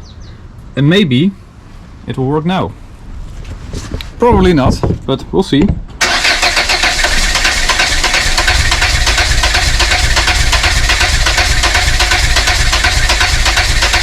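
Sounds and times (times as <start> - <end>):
starter motor cranking engine: 6.0 - 14.0.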